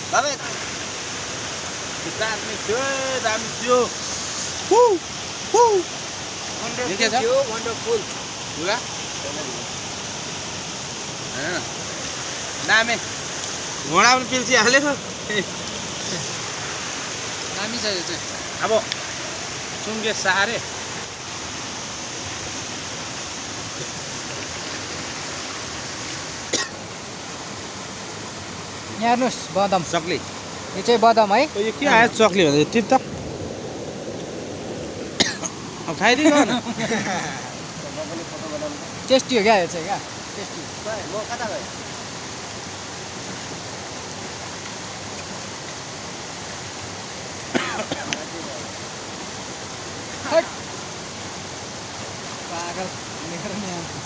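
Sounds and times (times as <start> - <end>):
river flowing: 0.0 - 54.0
person's voice: 30.8 - 33.1, 35.9 - 41.6.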